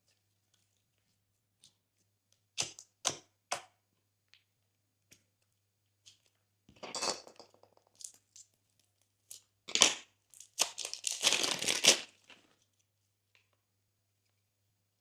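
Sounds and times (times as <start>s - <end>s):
slime crackling and popping: 9.8s - 12.2s.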